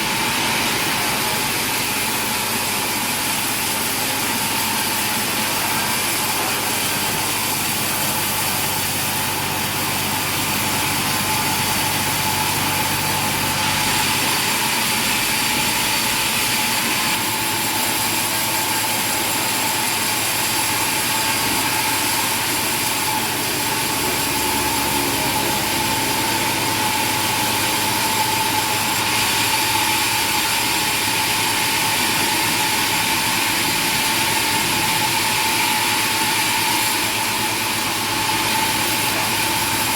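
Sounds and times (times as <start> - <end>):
machinery high whine: 0.0 - 39.9
wide even machine noise: 0.0 - 39.9
low drone shifting pitch: 23.4 - 28.2.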